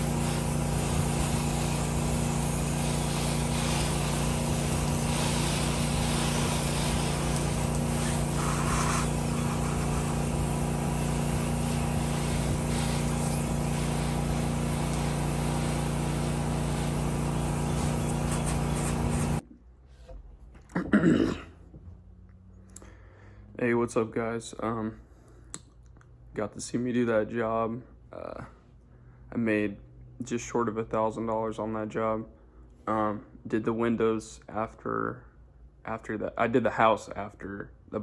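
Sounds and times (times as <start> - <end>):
even hiss of spray: 0.0 - 19.4
pressure washer engine running: 0.0 - 19.4.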